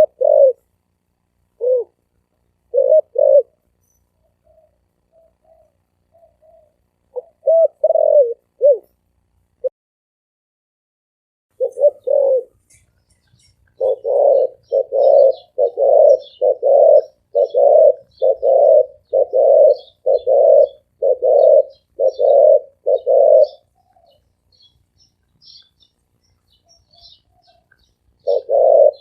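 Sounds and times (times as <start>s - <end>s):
dove cooing: 0.0s - 0.7s, 1.6s - 2.0s, 2.7s - 3.6s, 4.2s - 9.0s, 11.6s - 24.3s, 26.5s - 29.0s
small birds chirping: 1.5s - 9.1s, 11.6s - 29.0s.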